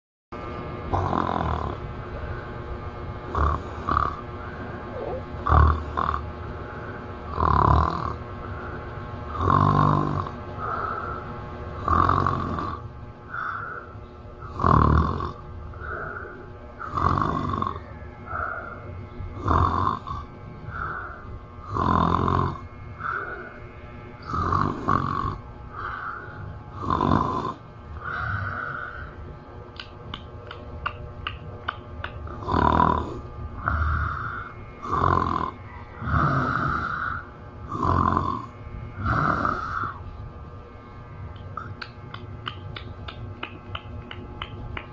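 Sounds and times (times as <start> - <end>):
woman snoring loudly: 0.9 - 1.8, 3.3 - 6.2, 7.3 - 8.2, 9.3 - 11.2, 11.8 - 23.6, 24.2 - 29.1, 32.3 - 40.1.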